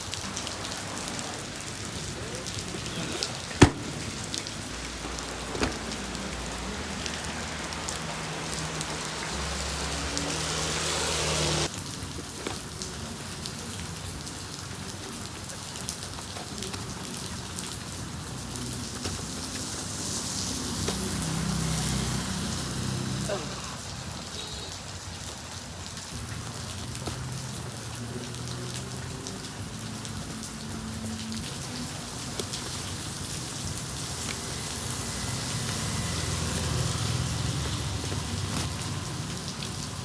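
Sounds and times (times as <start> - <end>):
rain on hard surfaces: 0.0 - 40.0
sharp knock: 3.6 - 4.3.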